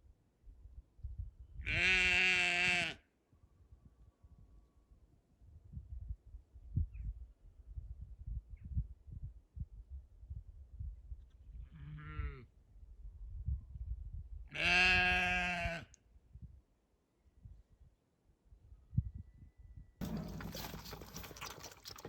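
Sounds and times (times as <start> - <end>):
sheep bleating: 1.7 - 3.0, 14.6 - 15.8
low thumps and rumble: 20.0 - 22.0.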